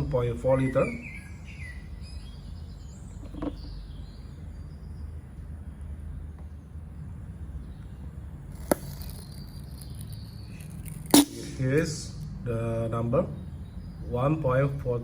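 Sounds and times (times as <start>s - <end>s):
faint birds chirping: 0.0s - 15.0s
steady low hum: 0.0s - 15.0s
sharp click: 9.8s - 11.9s.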